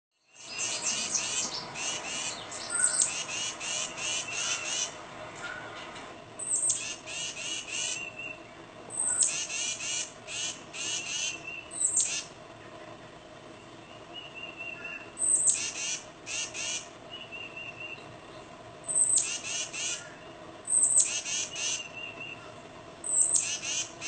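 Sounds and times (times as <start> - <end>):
bird singing repeated clear notes: 0.2 - 5.6, 6.4 - 12.3, 13.2 - 23.9.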